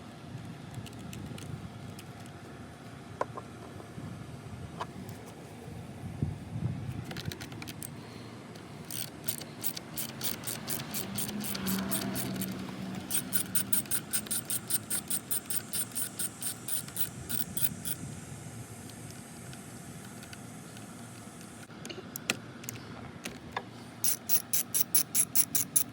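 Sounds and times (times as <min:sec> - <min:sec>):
socket ratchet clicking: 0:08.8 - 0:18.1, 0:24.0 - 0:25.9.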